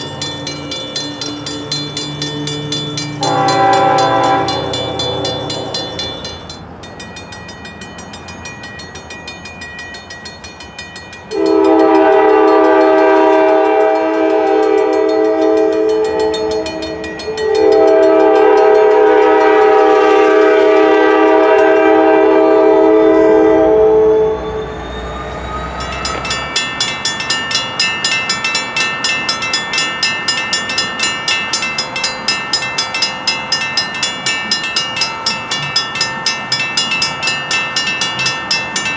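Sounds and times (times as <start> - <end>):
train horn blasts: 0.0 - 6.5, 11.3 - 24.6
railroad crossing bell ringing: 0.0 - 38.9.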